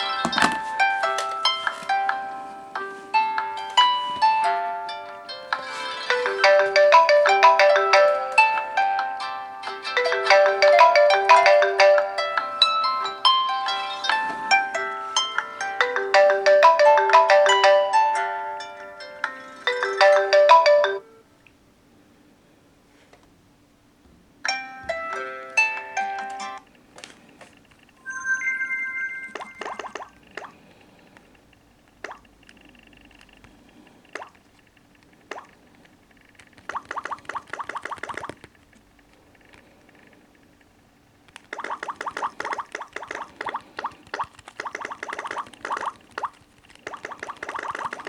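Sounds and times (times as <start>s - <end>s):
phone ringtone chiming tune: 3.5s - 21.2s, 28.0s - 30.1s
faint held tones: 27.9s - 30.2s
electronic water-drop plops: 29.3s - 30.6s, 32.0s - 32.3s, 36.6s - 38.3s, 41.4s - 48.0s.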